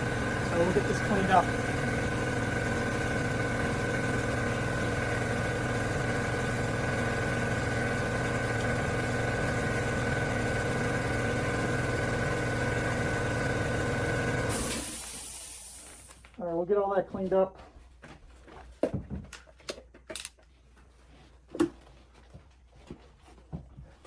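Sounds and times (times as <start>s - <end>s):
power grinder on steel: 0.0s - 16.2s.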